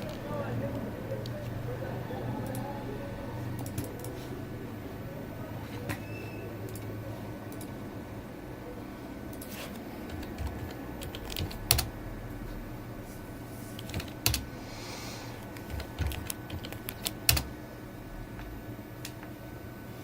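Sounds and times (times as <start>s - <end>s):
steady low hum: 0.0s - 20.0s
keyboard and mouse clicks: 3.6s - 4.2s, 7.5s - 7.8s, 9.3s - 11.9s, 13.8s - 14.5s, 15.4s - 17.5s.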